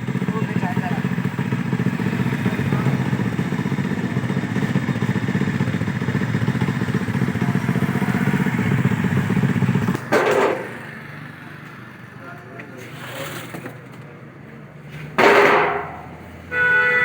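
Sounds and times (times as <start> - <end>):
small engine running: 0.0 - 12.2.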